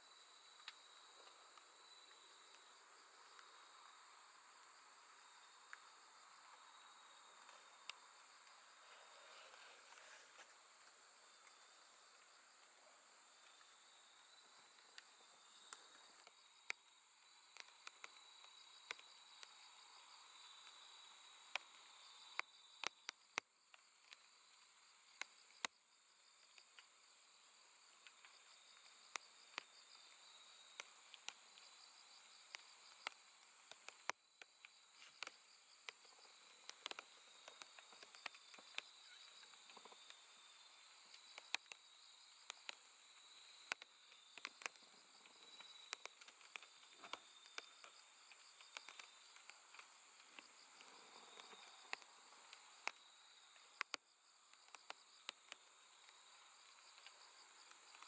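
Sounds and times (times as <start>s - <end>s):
grass insects trilling: 0.1s - 58.0s
sharp clicks: 32.5s - 40.2s, 41.1s - 41.8s, 43.4s - 53.0s.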